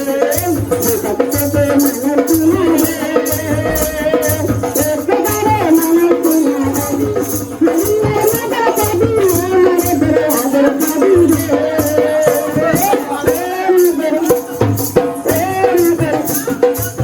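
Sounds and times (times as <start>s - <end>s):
melody with shaker percussion and beat: 3.5s - 4.8s.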